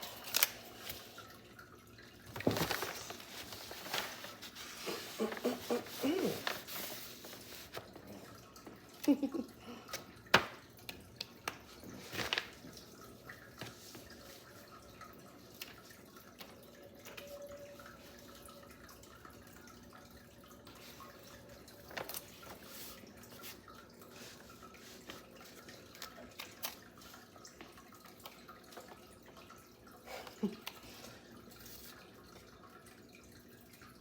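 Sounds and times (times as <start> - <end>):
soft rustling: 2.4 - 7.9.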